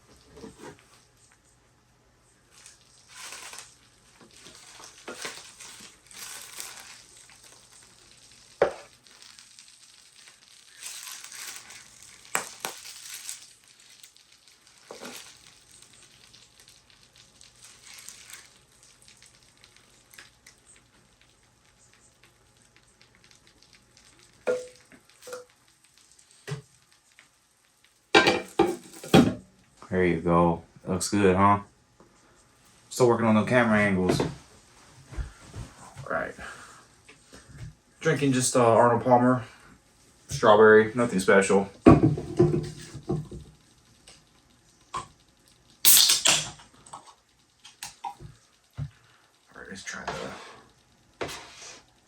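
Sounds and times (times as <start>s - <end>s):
wet scraping and stirring: 2.5s - 27.3s, 49.8s - 52.0s.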